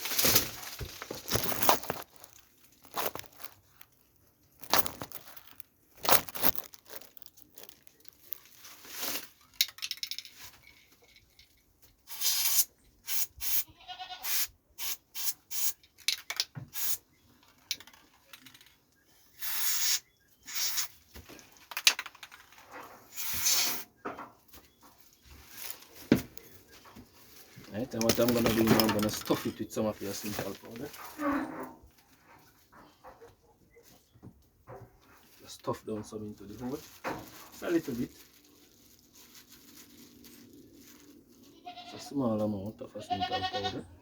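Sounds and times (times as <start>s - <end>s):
goat bleating: 13.6s - 14.3s, 41.5s - 42.1s, 43.0s - 43.9s
spray can hissing: 16.8s - 17.0s.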